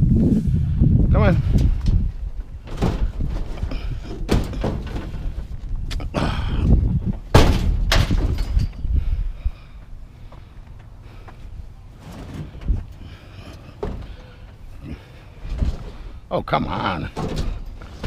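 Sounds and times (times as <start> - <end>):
sheet-metal cabinet banging: 2.7 - 5.4, 7.3 - 8.6, 17.0 - 18.0.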